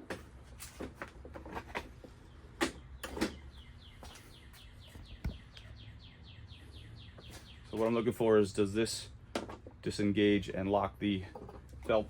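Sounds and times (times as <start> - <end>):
bird chirping: 2.2 - 8.1.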